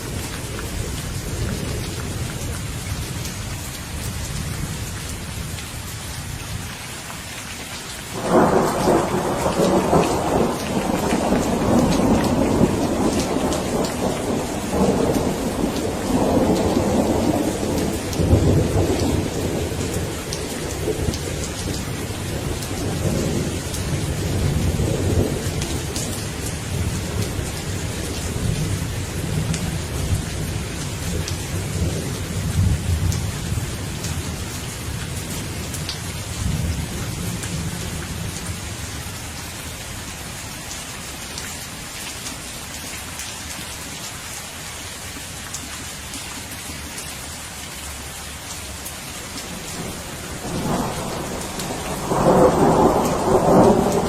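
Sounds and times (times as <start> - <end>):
steady rain falling: 0.0 - 54.0
thunder rumbling: 8.2 - 35.8, 49.4 - 54.0.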